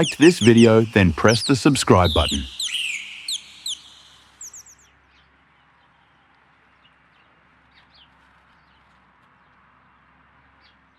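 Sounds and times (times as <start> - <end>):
small birds chirping: 0.0 - 5.9.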